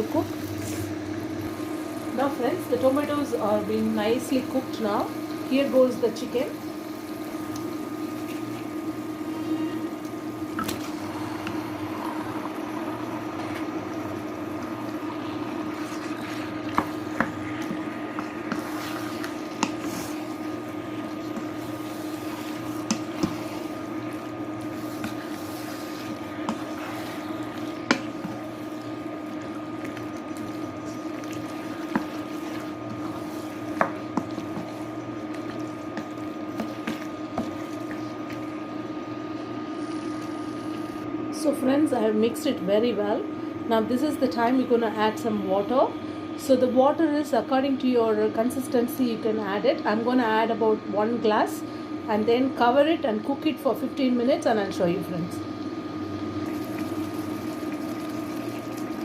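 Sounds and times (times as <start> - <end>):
steady hiss and hum: 0.0 - 59.0
spoon stirring food in a pan: 15.5 - 38.7.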